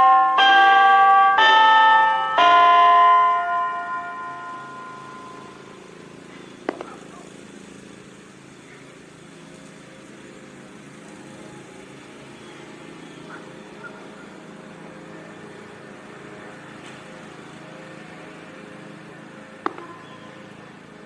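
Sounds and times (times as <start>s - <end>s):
outdoor background noise: 0.0s - 21.0s
car engine idling: 3.0s - 21.0s.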